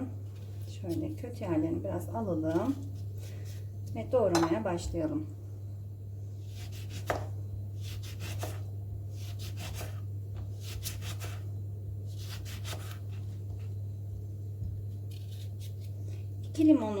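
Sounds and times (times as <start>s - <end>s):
knife slicing lemons: 6.5s - 11.5s, 12.1s - 13.3s, 15.1s - 16.0s.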